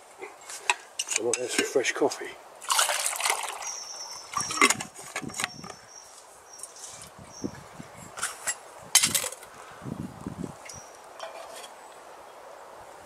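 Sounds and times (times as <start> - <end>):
camp cooking gear rustling and knocking: 0.0 - 1.8, 4.4 - 6.0, 8.1 - 9.5, 10.6 - 11.8
high bird chirps: 3.6 - 4.7.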